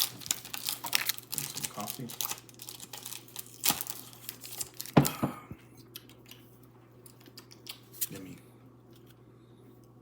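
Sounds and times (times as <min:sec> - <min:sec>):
foil wrapper crinkling: 0:00.0 - 0:05.1.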